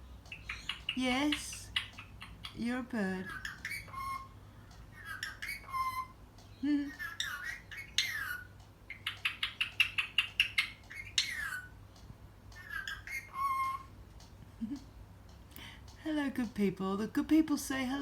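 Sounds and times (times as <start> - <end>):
rapid parrot clicks: 0.2 - 2.6, 6.3 - 16.6
parrot chattering and squawking: 0.2 - 11.8, 12.5 - 14.0
parrot whistling: 3.2 - 6.2, 6.8 - 11.7, 12.6 - 13.9.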